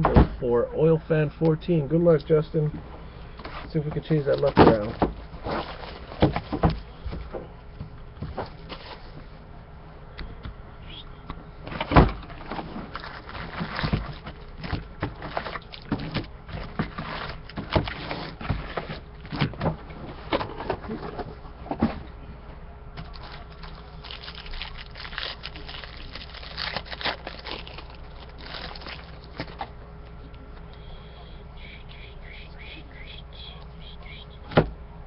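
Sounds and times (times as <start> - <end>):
cardboard and wrappers rustling: 3.4 - 7.2, 8.2 - 9.3, 11.7 - 22.0, 23.0 - 29.8.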